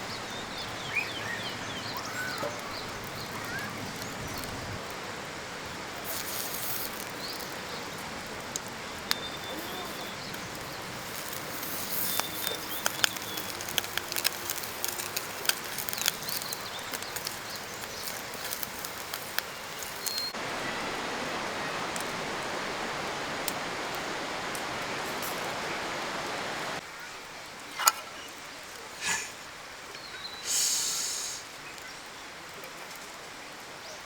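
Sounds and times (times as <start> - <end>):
fire crackling and popping: 0.0 - 26.8
steady rushing hiss: 0.0 - 33.8.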